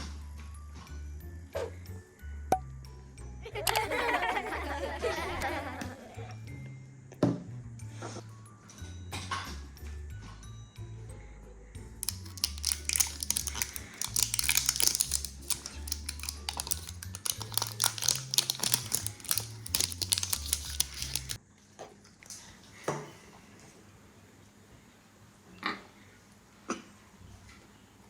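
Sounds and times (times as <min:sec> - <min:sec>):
wrapping paper crinkling and tearing: 0:12.0 - 0:21.4.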